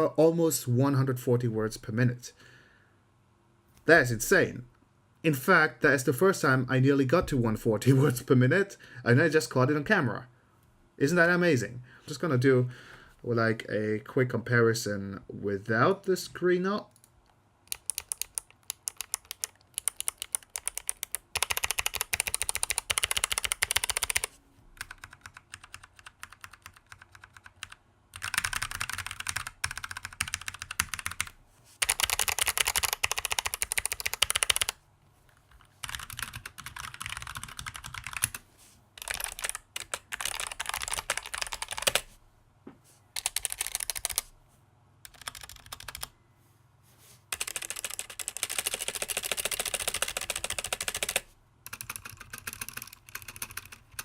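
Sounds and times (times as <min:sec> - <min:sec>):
fast typing on mechanical keyboards: 0:17.7 - 0:34.8, 0:35.5 - 0:38.4, 0:39.0 - 0:42.1, 0:43.2 - 0:44.3, 0:45.0 - 0:46.1, 0:47.3 - 0:54.0.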